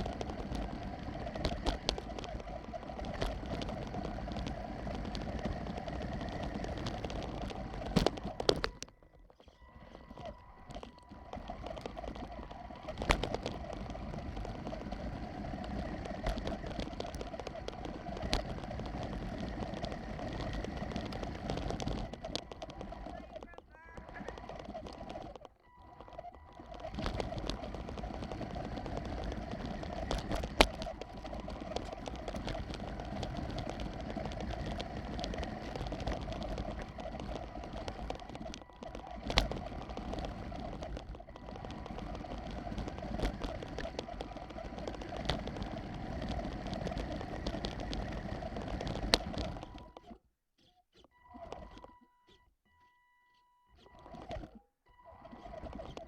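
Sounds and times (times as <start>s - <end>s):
toy truck electric motor whirr: 0.0s - 56.0s.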